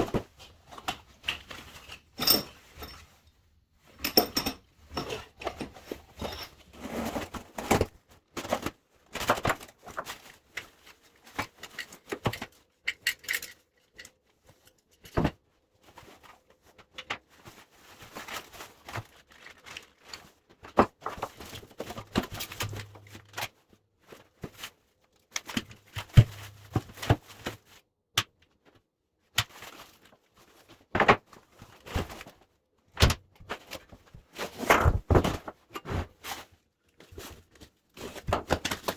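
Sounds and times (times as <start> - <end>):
metal parts clinking: 2.2 - 3.0, 4.0 - 5.6.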